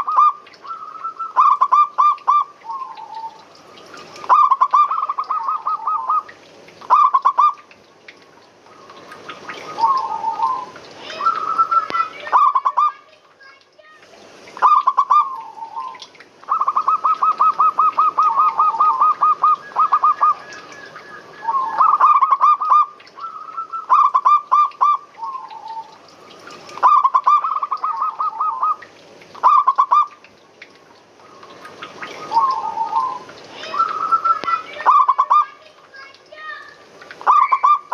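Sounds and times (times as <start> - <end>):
doves cooing: 0.0 - 7.6, 8.6 - 12.9, 14.6 - 30.2, 31.2 - 35.5, 37.2 - 37.9.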